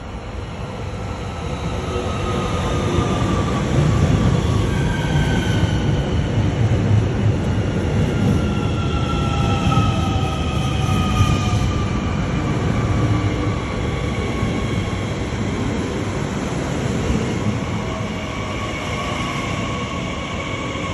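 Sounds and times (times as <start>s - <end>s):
train rumble: 0.0s - 20.9s.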